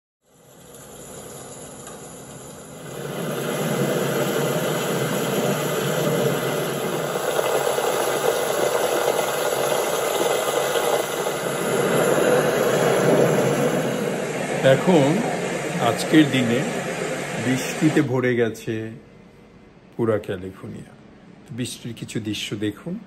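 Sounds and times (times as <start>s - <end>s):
heavy rain pouring: 0.5s - 18.2s.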